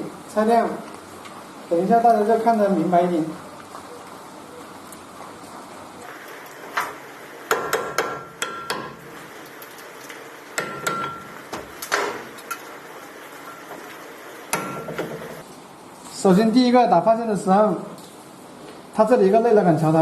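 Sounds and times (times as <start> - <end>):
hammer striking steel: 7.5 - 9.1, 10.6 - 12.2, 14.5 - 15.4.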